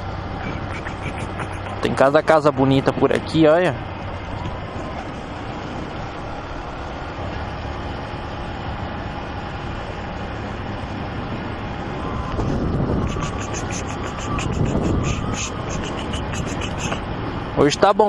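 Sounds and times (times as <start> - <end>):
road noise: 0.0 - 18.0
wind noise: 10.9 - 17.4.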